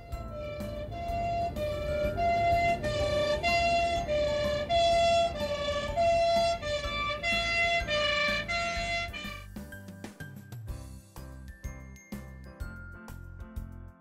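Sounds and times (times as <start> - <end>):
low rumble: 0.0 - 9.3
two-tone siren: 0.0 - 9.4.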